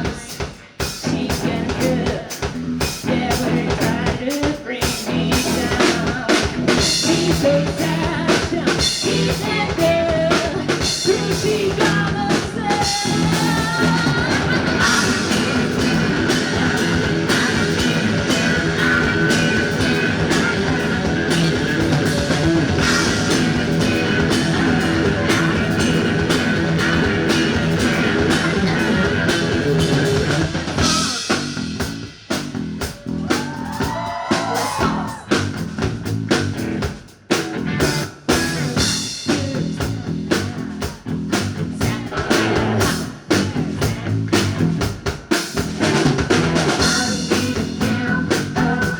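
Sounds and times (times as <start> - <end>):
rock band playing live: 0.0 - 48.9
lone guitar line: 1.0 - 44.9.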